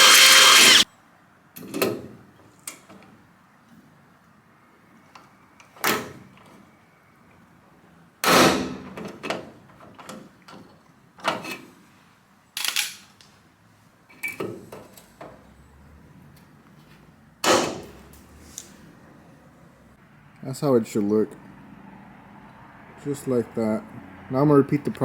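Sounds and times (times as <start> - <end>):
rivet gun snapping rivets: 12.6 - 13.1.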